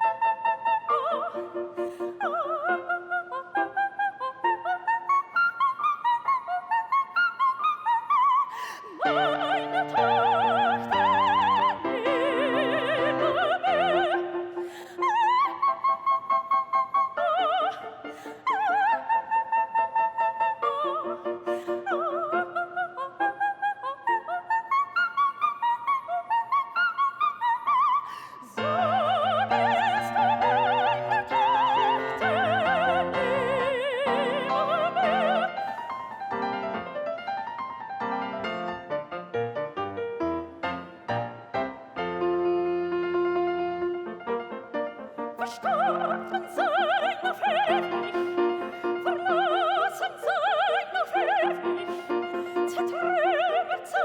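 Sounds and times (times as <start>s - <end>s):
operatic singing: 8.8s - 25.0s, 27.4s - 36.6s, 45.2s - 54.0s.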